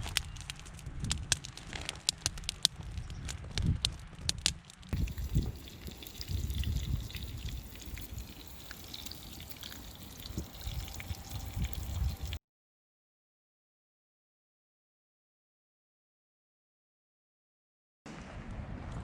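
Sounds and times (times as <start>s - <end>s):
wind buffeting microphone: 0.0s - 1.6s, 2.2s - 12.4s
light ticks and crackles: 0.0s - 12.4s.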